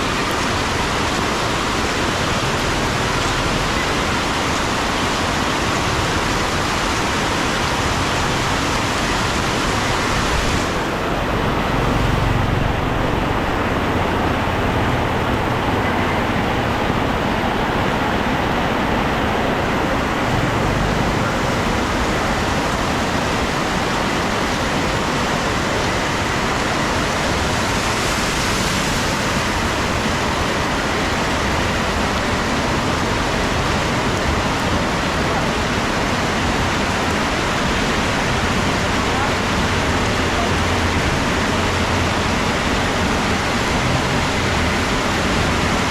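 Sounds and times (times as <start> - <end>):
heavy rain: 0.0 - 45.9.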